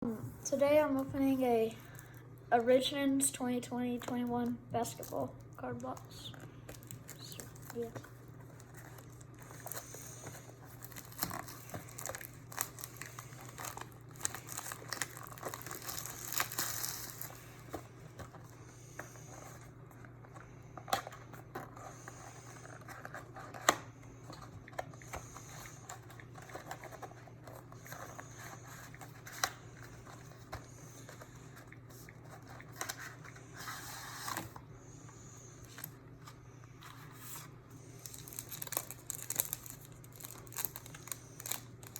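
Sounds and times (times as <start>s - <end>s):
plastic wrapping tearing and crinkling: 6.7s - 18.4s, 37.9s - 41.9s.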